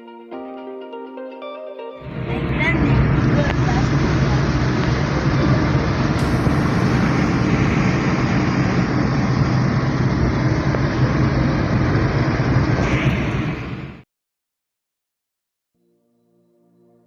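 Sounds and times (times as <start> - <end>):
low hum: 2.0 - 14.0
vehicle engine and road rumble: 2.0 - 14.0.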